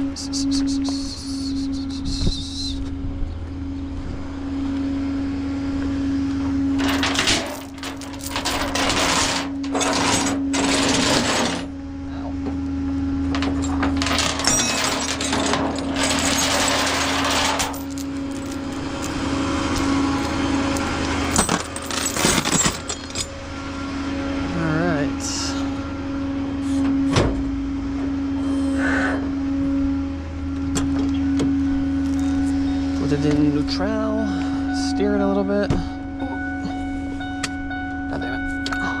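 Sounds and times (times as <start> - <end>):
vehicle engine running: 0.0 - 39.0
harsh mechanical rattling: 6.8 - 11.7, 13.2 - 23.4.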